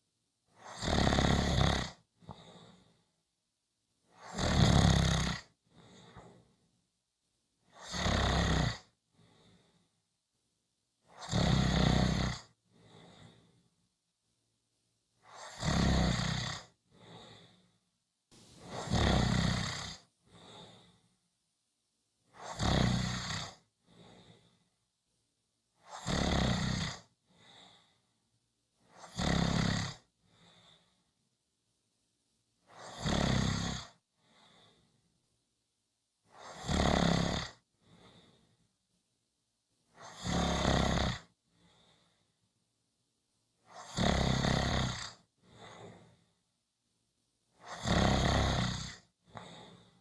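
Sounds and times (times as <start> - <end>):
person snoring: 0.6 - 1.9, 4.2 - 5.5, 7.8 - 8.9, 11.2 - 12.5, 18.6 - 20.0, 22.4 - 23.6, 29.0 - 30.0, 36.4 - 37.5, 40.1 - 41.2, 43.8 - 45.2, 47.7 - 49.0.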